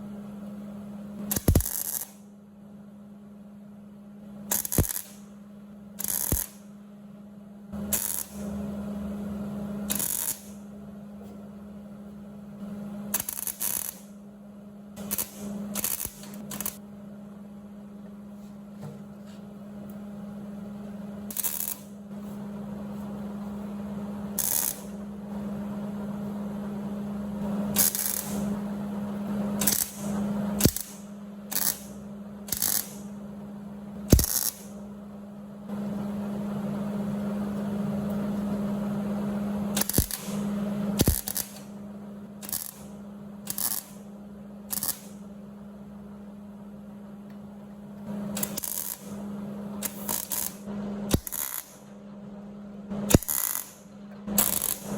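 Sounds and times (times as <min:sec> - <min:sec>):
steady welder hum: 0:00.0 - 0:54.9
crackling welding arc: 0:01.3 - 0:02.2, 0:04.5 - 0:05.3, 0:06.0 - 0:06.7, 0:07.8 - 0:08.6, 0:09.9 - 0:10.6, 0:13.1 - 0:14.1, 0:15.0 - 0:16.8, 0:21.3 - 0:22.0, 0:24.4 - 0:25.0, 0:27.7 - 0:28.6, 0:29.6 - 0:33.2, 0:34.1 - 0:34.8, 0:39.7 - 0:41.7, 0:42.4 - 0:42.9, 0:43.5 - 0:44.1, 0:44.7 - 0:45.2, 0:48.4 - 0:49.2, 0:49.8 - 0:51.9, 0:53.1 - 0:54.9.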